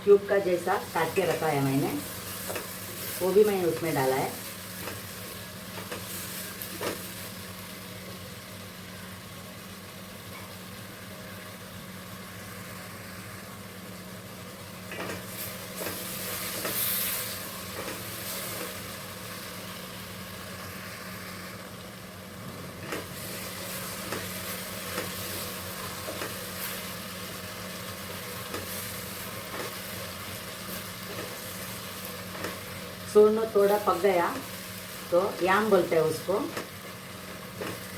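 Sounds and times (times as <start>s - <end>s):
food sizzling in oil: 0.0s - 37.9s.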